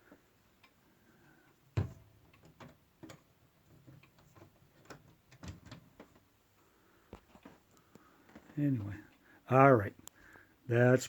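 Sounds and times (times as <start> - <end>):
wall clock ticking: 0.0 - 11.0.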